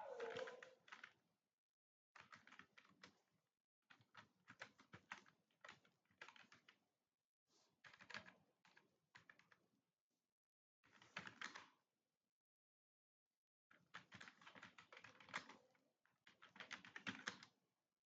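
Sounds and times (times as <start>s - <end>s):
faint typing on keyboard: 0.0s - 1.2s, 2.2s - 3.3s, 3.9s - 6.8s, 7.8s - 9.6s, 10.9s - 11.8s, 13.7s - 17.6s.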